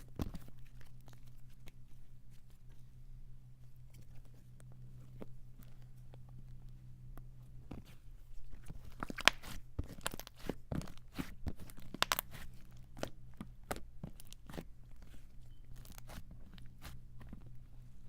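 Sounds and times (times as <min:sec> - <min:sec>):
slime squished by hand: 0:08.5 - 0:15.2.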